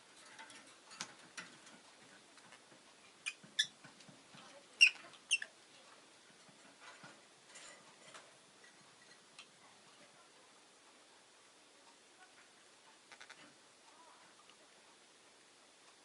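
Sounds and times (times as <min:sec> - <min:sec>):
lovebird high chirps: 0:04.8 - 0:05.5.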